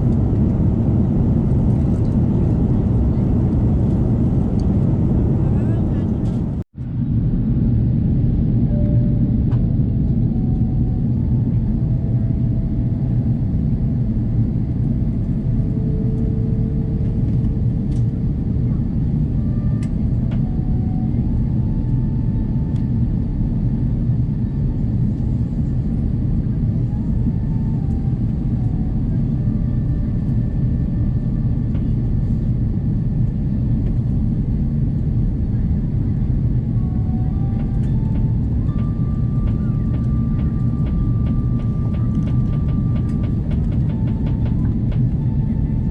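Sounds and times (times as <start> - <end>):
airliner cabin engine rumble: 0.0 - 45.9
faint whining tones: 35.6 - 45.9.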